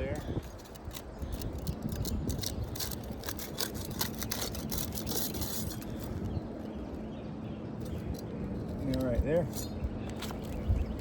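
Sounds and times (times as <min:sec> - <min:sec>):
shingles scraping and crackling: 0:00.0 - 0:06.3
wind on microphone: 0:00.0 - 0:07.2, 0:07.8 - 0:11.0.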